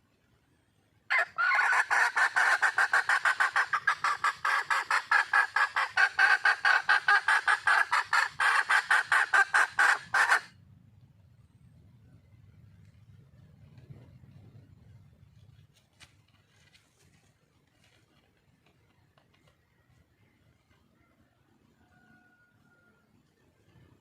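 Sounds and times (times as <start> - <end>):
hen clucking rapidly: 1.1 - 10.5.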